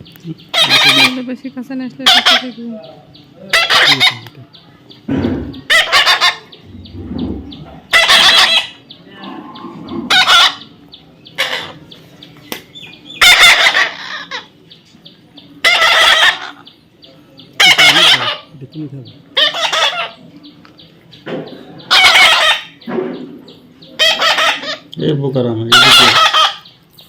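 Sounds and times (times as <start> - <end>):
parrot squawking: 0.5 - 1.3, 2.0 - 4.3, 5.4 - 11.8, 13.1 - 14.6, 15.6 - 16.8, 17.5 - 18.6, 19.3 - 20.2, 21.8 - 22.9, 23.8 - 24.9, 25.6 - 26.8.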